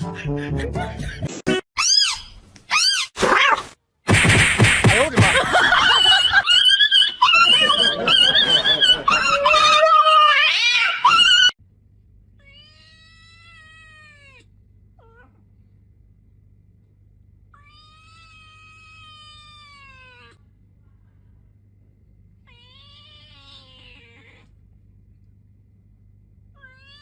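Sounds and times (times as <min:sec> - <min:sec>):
cat meowing: 0:09.4 - 0:11.5, 0:12.4 - 0:15.4, 0:17.6 - 0:20.4, 0:22.5 - 0:24.5, 0:26.6 - 0:27.0
steady low hum: 0:14.4 - 0:18.8.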